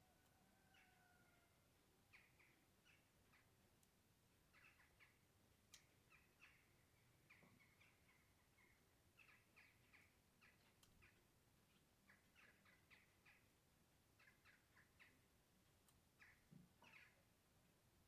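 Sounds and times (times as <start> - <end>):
faint bird chirps: 5.8 - 13.6, 16.2 - 17.3.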